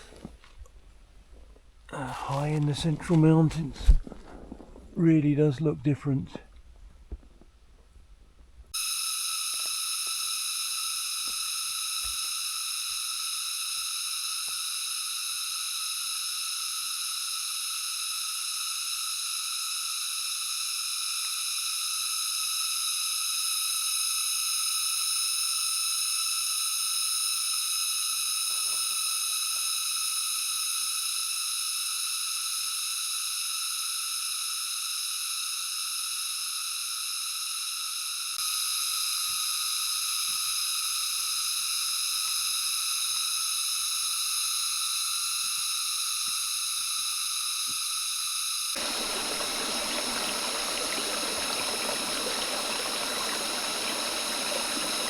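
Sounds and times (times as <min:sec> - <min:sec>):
high-pitched hiss: 0:08.8 - 0:55.0.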